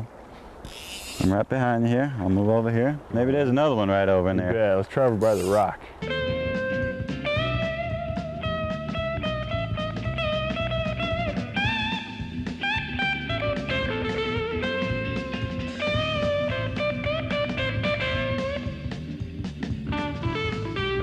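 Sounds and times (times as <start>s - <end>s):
bluesy guitar melody: 6.0s - 21.0s.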